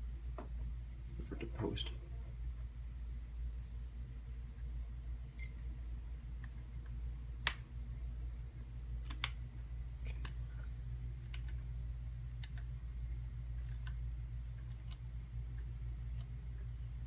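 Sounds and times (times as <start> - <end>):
computer hum: 0.0 - 17.0
sharp clicks: 9.0 - 9.4.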